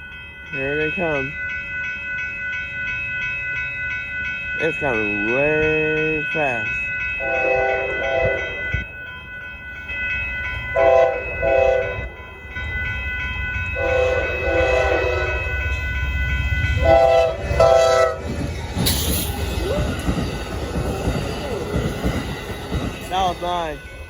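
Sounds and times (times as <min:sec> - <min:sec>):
crossing signal ringing: 0:00.0 - 0:24.0
rush of passing train: 0:00.0 - 0:24.0
train rumble: 0:00.0 - 0:24.0
locomotive horn blasts: 0:07.2 - 0:08.6, 0:10.8 - 0:12.1, 0:13.8 - 0:15.5, 0:16.8 - 0:18.3.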